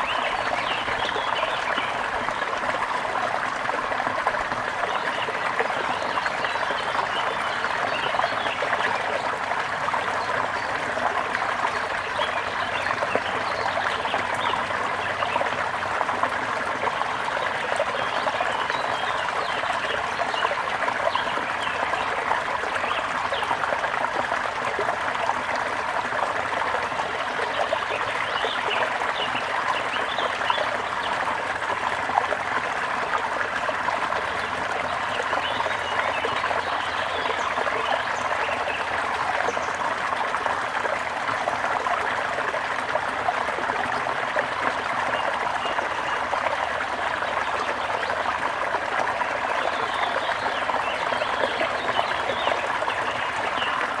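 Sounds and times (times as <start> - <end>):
water trickling over stones: 0.0 - 12.1.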